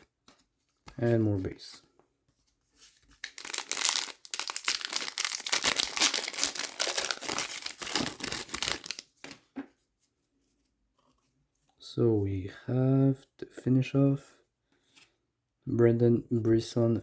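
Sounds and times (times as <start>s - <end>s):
foil wrapper crinkling and tearing: 3.1s - 9.4s.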